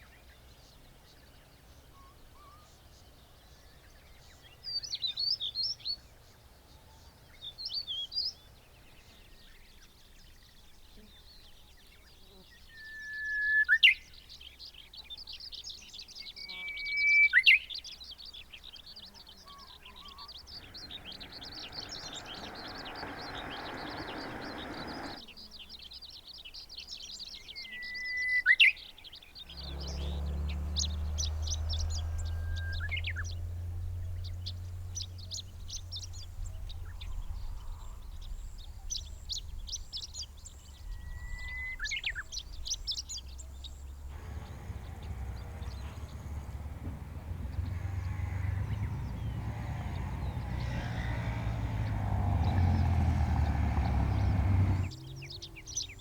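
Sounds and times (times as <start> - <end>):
bird whistling song: 12.7 - 14.2, 16.2 - 18.0, 19.5 - 25.2, 27.0 - 37.6, 38.8 - 50.7
faint high twittering: 16.4 - 25.3, 29.2 - 56.0
birds chattering: 18.3 - 25.3, 29.3 - 56.0.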